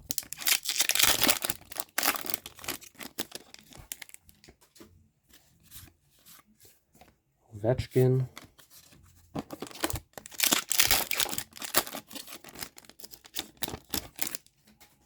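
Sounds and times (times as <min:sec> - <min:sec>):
wrapper tearing and crinkling: 0:00.0 - 0:04.2, 0:09.5 - 0:14.5
cards rustling: 0:00.1 - 0:06.6, 0:07.8 - 0:15.0.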